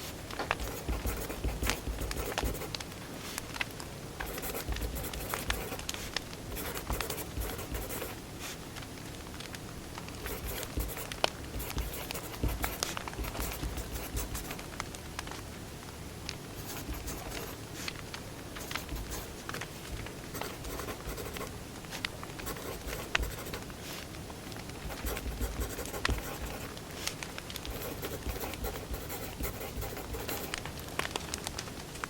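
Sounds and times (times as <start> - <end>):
pencil writing on paper: 0.6 - 2.8, 4.2 - 5.8, 6.5 - 8.2, 10.2 - 14.6, 16.6 - 17.6, 18.6 - 21.5, 22.4 - 23.6, 24.8 - 26.7, 27.6 - 30.6
firewood crackling and popping: 2.7 - 4.1, 8.6 - 10.2, 11.1 - 11.5, 26.7 - 27.7, 30.5 - 32.0.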